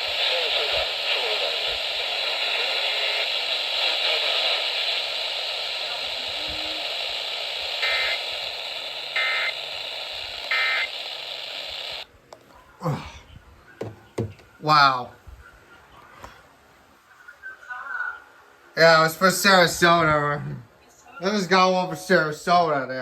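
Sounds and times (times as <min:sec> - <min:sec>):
two-tone data bursts: 0:00.0 - 0:12.0
radio hiss: 0:00.0 - 0:12.1.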